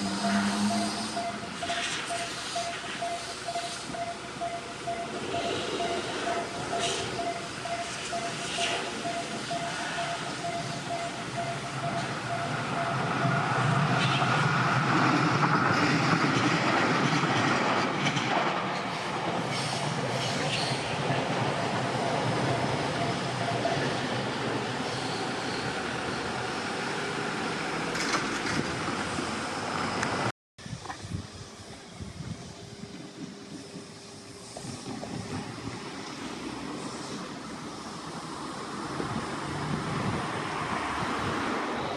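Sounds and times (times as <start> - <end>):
train rumble and wheel noise: 0.0 - 41.9
level-crossing alarm ringing: 0.2 - 13.8
gusty wind on microphone: 30.1 - 36.0, 38.8 - 41.9.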